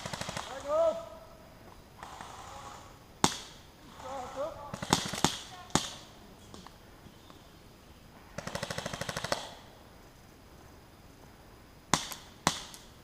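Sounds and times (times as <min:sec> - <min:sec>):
airsoft gun full-auto burst: 0:00.0 - 0:01.0, 0:02.0 - 0:06.0, 0:08.4 - 0:09.7.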